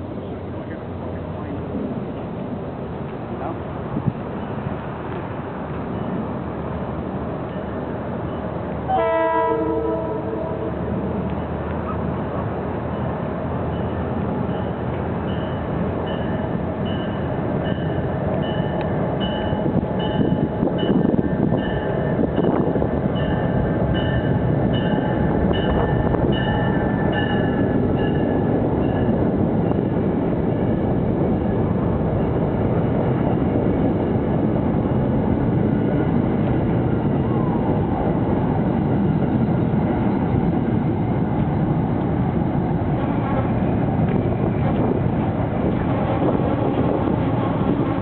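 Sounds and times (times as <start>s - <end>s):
diesel train rumbling: 0.0s - 48.0s
train bell ringing: 5.8s - 6.4s, 7.4s - 10.3s, 12.8s - 29.9s.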